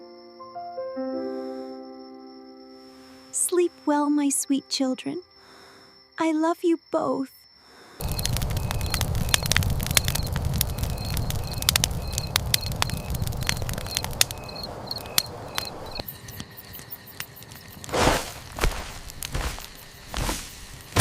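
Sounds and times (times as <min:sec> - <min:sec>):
crickets chirping: 0:00.0 - 0:21.0
campfire crackling and popping: 0:08.0 - 0:21.0
rustling: 0:11.6 - 0:21.0.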